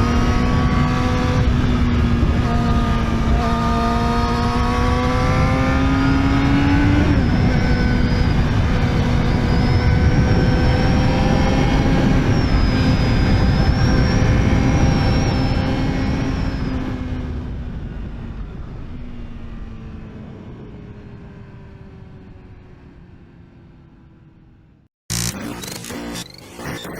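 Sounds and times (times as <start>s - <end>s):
motorcycle engine revving: 0.0s - 17.1s
wind rush: 0.0s - 19.3s.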